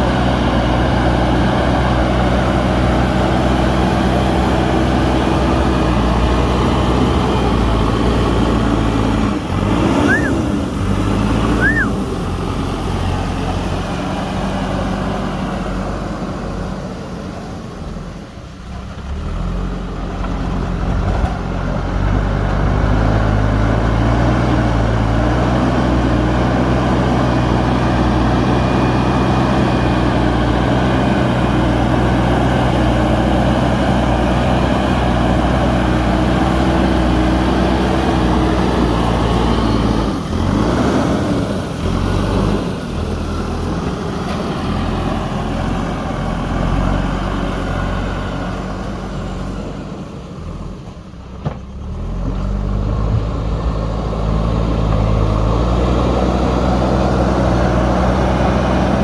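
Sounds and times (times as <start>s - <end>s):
diesel engine under load: 0.0s - 59.0s
short squeals: 10.0s - 10.5s, 11.5s - 12.0s.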